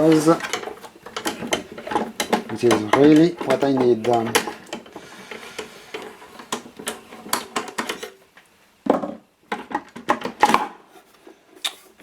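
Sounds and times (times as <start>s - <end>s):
hand tool and metal parts clattering: 0.0s - 8.2s.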